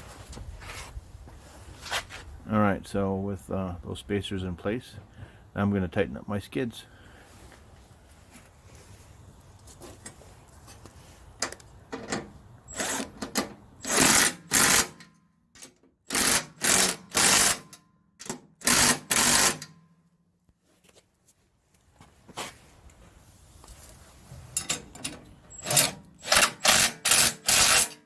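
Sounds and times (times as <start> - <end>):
power driver tightening bolts: 11.4 - 19.7, 24.6 - 28.0.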